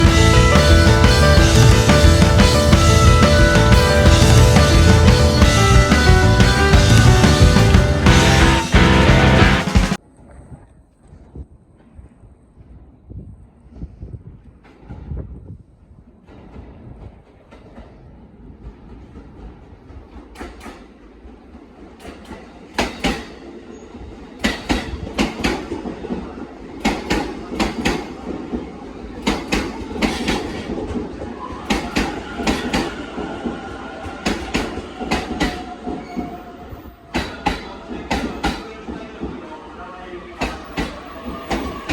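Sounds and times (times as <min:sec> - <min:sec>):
wind buffeting microphone: 0:10.2 - 0:20.2
train wheels clacking over rail joints: 0:18.6 - 0:23.6, 0:24.3 - 0:39.4, 0:40.4 - 0:41.9
high squeal of train brakes: 0:31.3 - 0:38.8.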